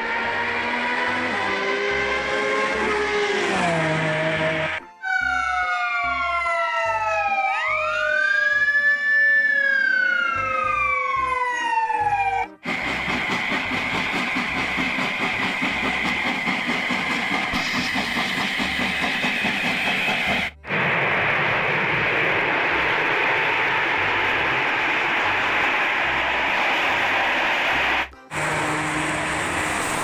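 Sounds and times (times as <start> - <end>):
electronic siren-like wailing: 0.0 - 14.0.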